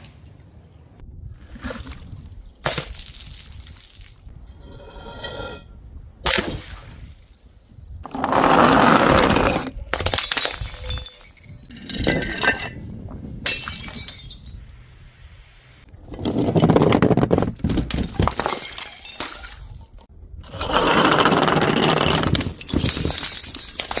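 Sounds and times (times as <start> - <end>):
glass bottles breaking: 9.9 - 12.7, 13.4 - 14.6, 17.7 - 20.1, 22.1 - 24.0.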